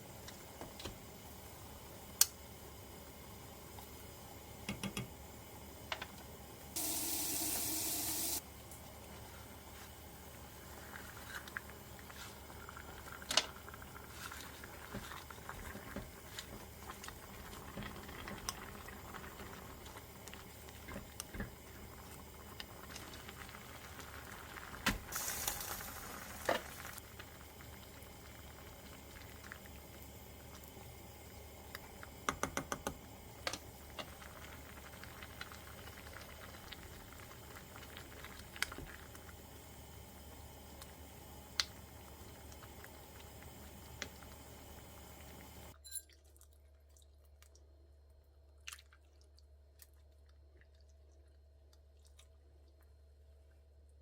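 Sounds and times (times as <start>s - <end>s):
kitchen tap running water: 6.8s - 8.4s.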